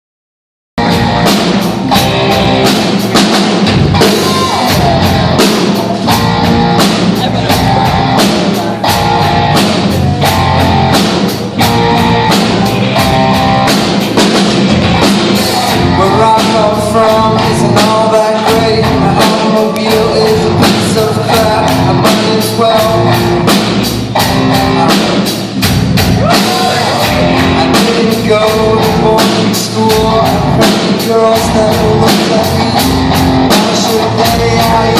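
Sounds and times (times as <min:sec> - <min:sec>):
drum kit beat: 0:00.8 - 0:34.9
guitar: 0:00.8 - 0:34.9
rock band playing: 0:00.8 - 0:34.9
person singing: 0:04.0 - 0:13.7, 0:14.8 - 0:23.4, 0:26.2 - 0:34.9.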